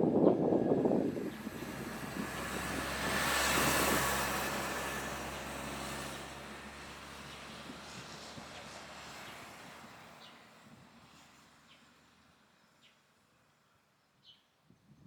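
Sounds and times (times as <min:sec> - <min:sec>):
vehicle passing by: 0:00.9 - 0:10.3.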